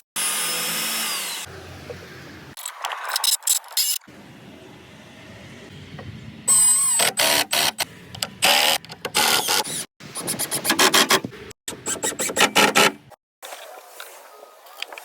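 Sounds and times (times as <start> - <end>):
power drill running: 0.2 - 1.5.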